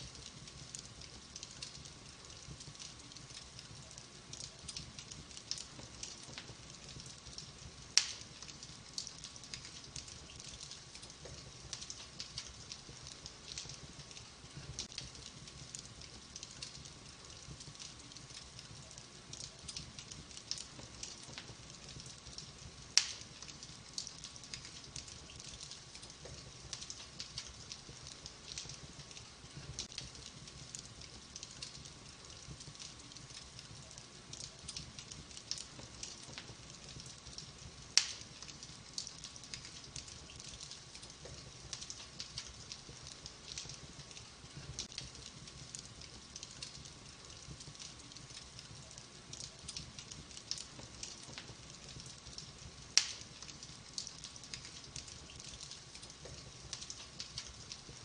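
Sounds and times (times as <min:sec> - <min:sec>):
wood fire crackling: 0:00.0 - 0:58.0
loud fire pops: 0:04.4 - 0:15.8, 0:16.6 - 0:30.8, 0:34.4 - 0:44.0, 0:49.4 - 0:57.7.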